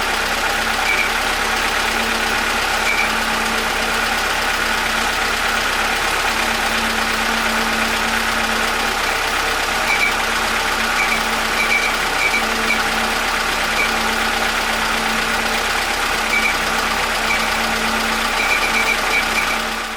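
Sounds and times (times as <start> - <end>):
air compressor humming: 0.0 - 19.9.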